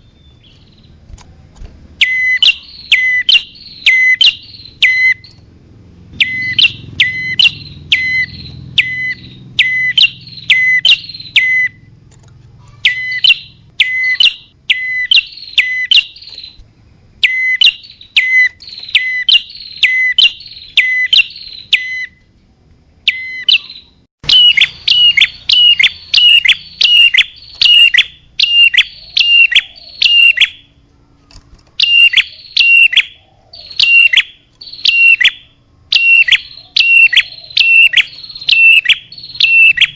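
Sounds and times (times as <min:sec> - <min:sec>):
bird chirps: 0:00.0 - 0:01.1, 0:01.9 - 0:12.0, 0:12.6 - 0:39.9.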